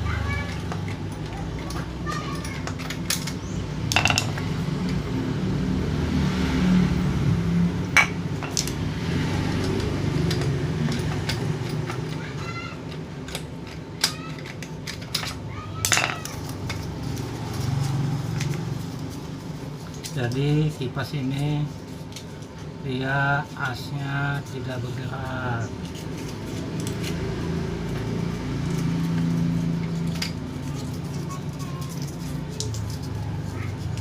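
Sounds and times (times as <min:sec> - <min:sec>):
metallic clinks and knocks: 0:00.5 - 0:04.6, 0:13.3 - 0:17.0.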